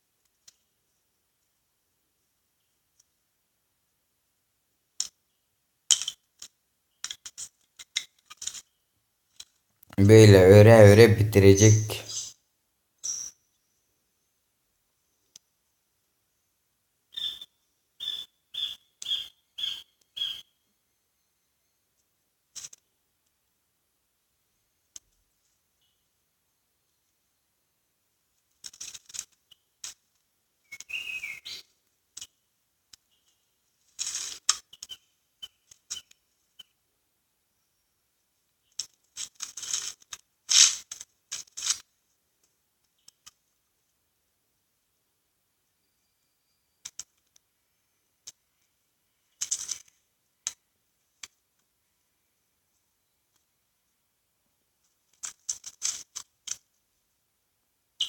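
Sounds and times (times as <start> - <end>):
chirp-like whistle: 30.6 - 31.6
rustling and scraping of plant fibre: 33.1 - 35.0, 38.7 - 41.9.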